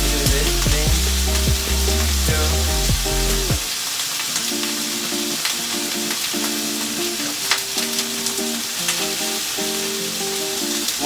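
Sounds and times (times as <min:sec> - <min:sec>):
simple tune: 0:00.0 - 0:03.7
vegetables sizzling in a frying pan: 0:01.0 - 0:11.0.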